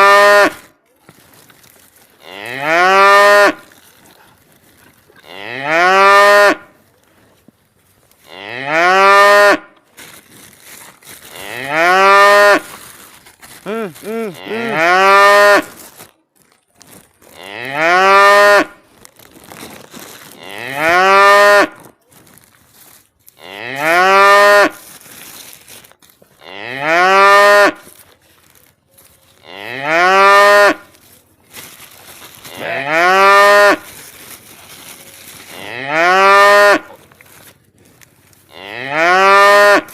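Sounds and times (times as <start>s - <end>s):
cow mooing: 14.3s - 15.7s, 32.5s - 33.8s, 35.6s - 37.0s, 38.5s - 39.9s.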